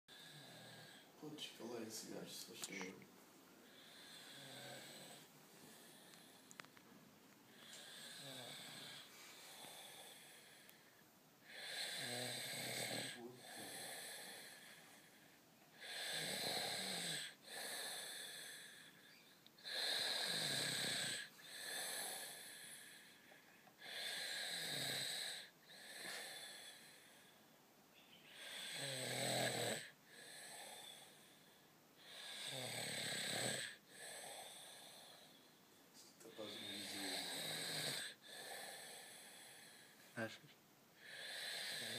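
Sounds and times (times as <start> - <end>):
man snoring: 0.1 - 1.2, 3.7 - 6.4, 7.6 - 10.7, 11.5 - 15.2, 15.8 - 19.0, 19.6 - 23.2, 23.8 - 27.3, 28.4 - 31.4, 32.0 - 35.5, 36.3 - 39.9, 41.0 - 41.9.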